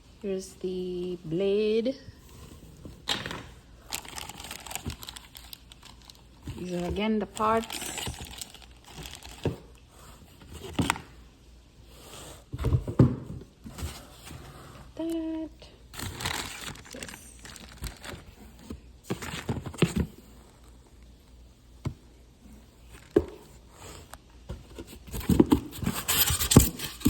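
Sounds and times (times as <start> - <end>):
plastic bags crinkling: 3.8 - 9.8, 15.9 - 19.9.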